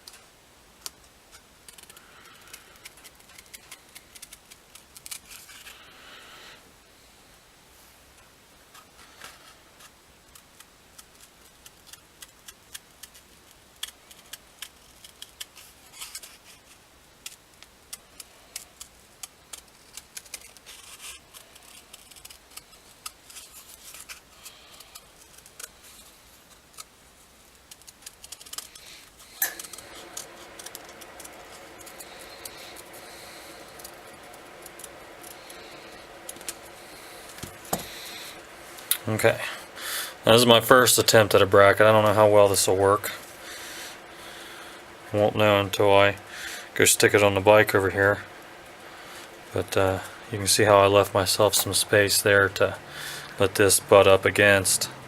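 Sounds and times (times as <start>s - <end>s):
steady pitched hum: 0.0s - 10.9s, 24.3s - 55.0s
hand snips cutting metal: 27.7s - 38.2s, 51.5s - 51.8s.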